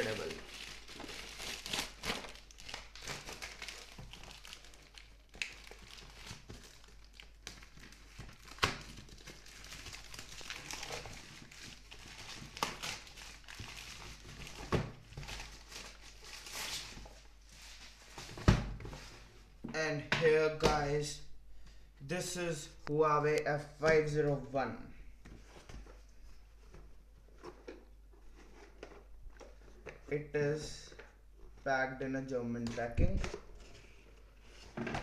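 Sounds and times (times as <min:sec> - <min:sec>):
packaging rustling and crinkling: 0:00.0 - 0:19.3.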